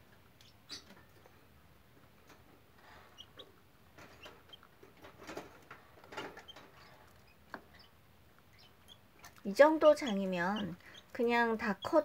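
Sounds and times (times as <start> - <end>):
chicken pecking and scratching: 2.0 - 7.9.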